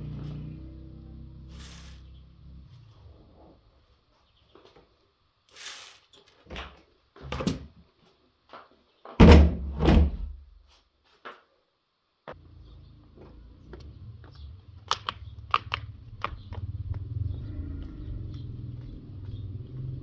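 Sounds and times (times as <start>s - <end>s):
knocks and thuds: 9.2s - 10.5s
heavy thumps: 9.2s - 10.6s.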